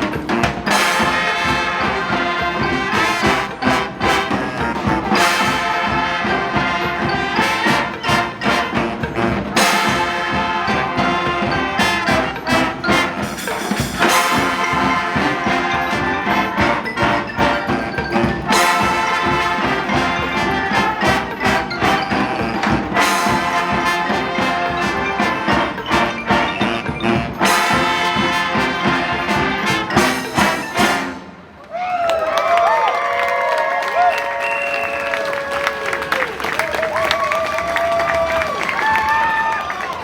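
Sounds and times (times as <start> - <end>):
brass band playing jazz: 0.0 - 31.6, 34.3 - 40.0
people cheering: 31.6 - 40.0.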